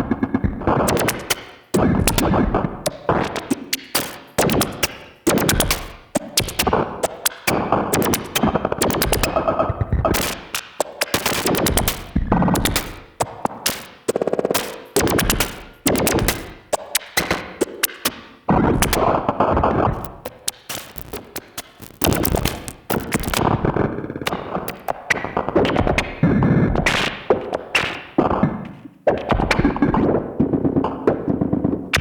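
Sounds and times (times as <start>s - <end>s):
synthesizer glitchy bursts: 0.9s - 1.4s, 3.4s - 6.7s, 14.6s - 16.5s, 19.8s - 23.6s.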